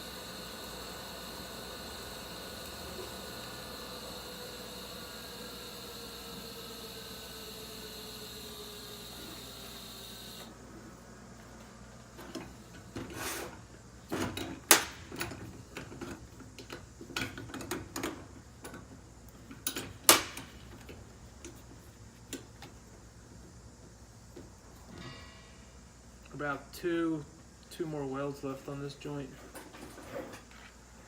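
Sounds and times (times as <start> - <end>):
welding arc buzzing: 0.0 - 10.5.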